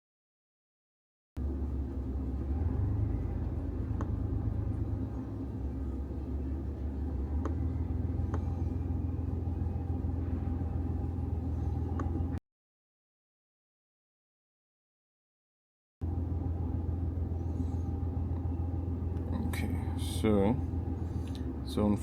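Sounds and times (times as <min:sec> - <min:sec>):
steady low rumble: 0:01.4 - 0:12.4, 0:16.0 - 0:22.0.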